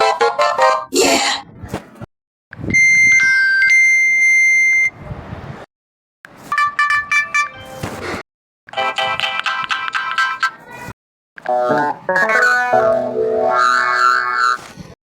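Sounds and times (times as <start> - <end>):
steady beep: 2.7 - 4.9.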